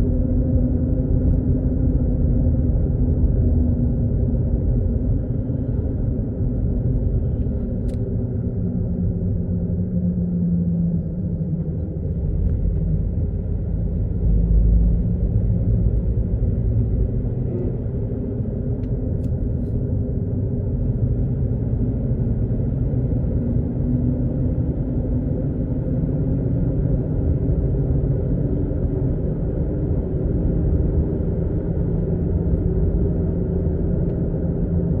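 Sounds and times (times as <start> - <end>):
car low rumble: 0.0 - 35.0.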